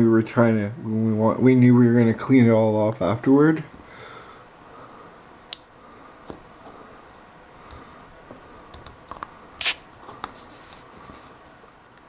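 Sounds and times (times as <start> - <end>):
spray can hiss: 9.6 - 9.8.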